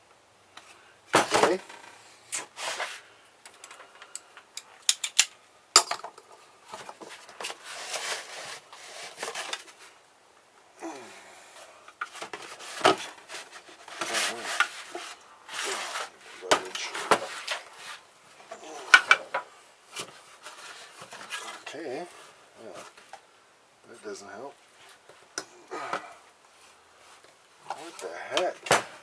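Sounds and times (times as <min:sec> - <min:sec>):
metal parts clinking and scraping: 0:03.5 - 0:06.1.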